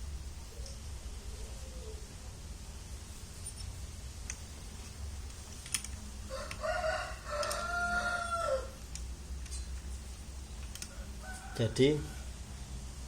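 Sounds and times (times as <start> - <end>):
rooster crowing: 6.3 - 8.8, 10.9 - 12.4.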